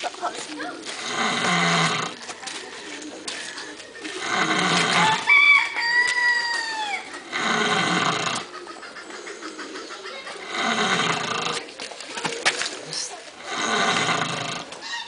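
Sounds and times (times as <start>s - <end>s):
pig snoring: 1.0s - 2.2s, 4.2s - 5.3s, 7.2s - 8.5s, 10.4s - 11.6s, 13.4s - 14.8s.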